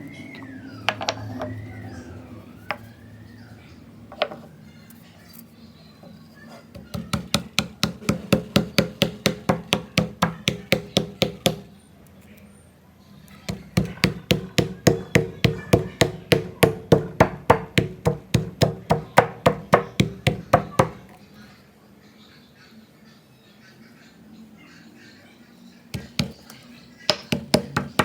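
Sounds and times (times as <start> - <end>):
knife chopping on wooden board: 26.0 - 26.4, 27.1 - 28.0.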